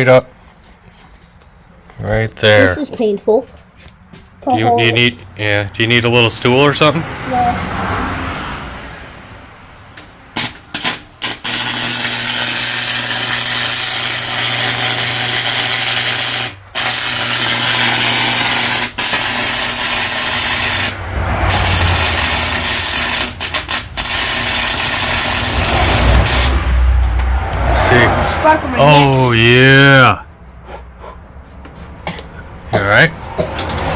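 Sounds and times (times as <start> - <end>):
electric arc welding crackling: 10.8 - 26.6.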